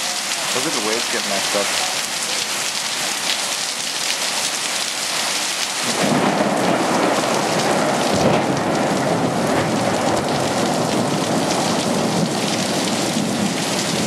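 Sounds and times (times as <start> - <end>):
heavy rain pouring: 0.0 - 14.0
thunder rumbling: 5.8 - 14.0.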